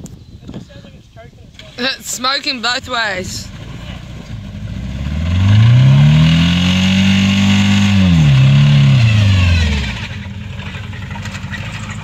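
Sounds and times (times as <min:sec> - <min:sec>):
car engine revving hard: 0:03.5 - 0:10.3.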